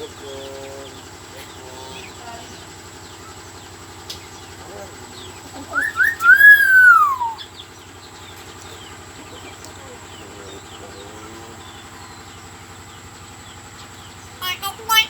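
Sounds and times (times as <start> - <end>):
faint bird chirps: 0.0 - 15.0
low steady hum: 0.0 - 15.0
loud whistle-like bird call: 5.7 - 7.6.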